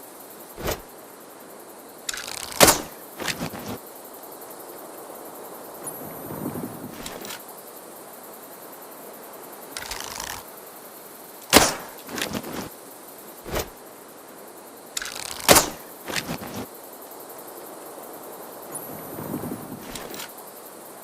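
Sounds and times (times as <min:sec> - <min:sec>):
bow draw rustling: 0:00.6 - 0:00.9, 0:02.1 - 0:03.8, 0:06.6 - 0:07.4, 0:09.8 - 0:10.4, 0:11.4 - 0:12.7, 0:13.4 - 0:13.8, 0:15.0 - 0:16.7, 0:19.4 - 0:20.3
bowstring snap: 0:02.1 - 0:03.8, 0:11.4 - 0:12.7, 0:15.0 - 0:16.6.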